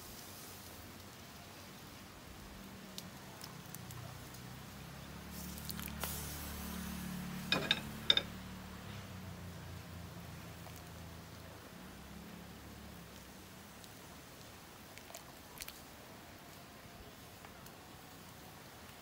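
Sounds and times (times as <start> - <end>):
pot simmering: 0.0 - 16.6
metal utensil clinking on pot: 7.5 - 8.3.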